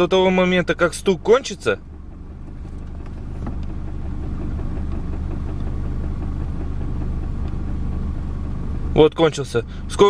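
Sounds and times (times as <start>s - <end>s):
car engine idling: 0.0s - 10.0s
gearbox rattling knock: 2.2s - 7.6s.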